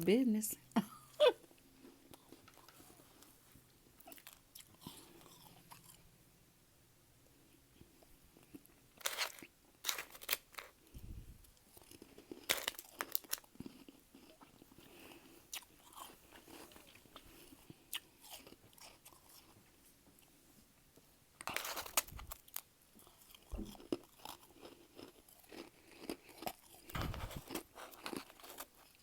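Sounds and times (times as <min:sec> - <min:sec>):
crunching and chewing frost: 0:01.8 - 0:06.1, 0:07.4 - 0:29.0
low thump: 0:23.6 - 0:23.8.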